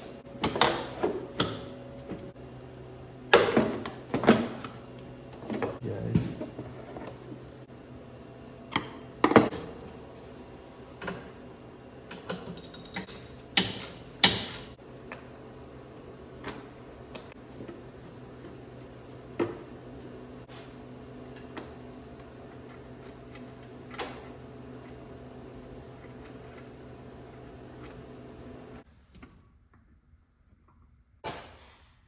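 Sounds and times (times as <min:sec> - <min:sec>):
metal tools clicking and clanking: 0:12.3 - 0:14.8.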